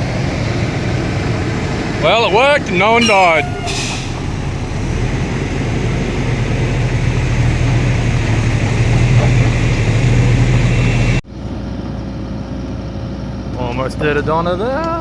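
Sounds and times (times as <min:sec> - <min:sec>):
heavy engine humming: 0:00.0 - 0:11.8.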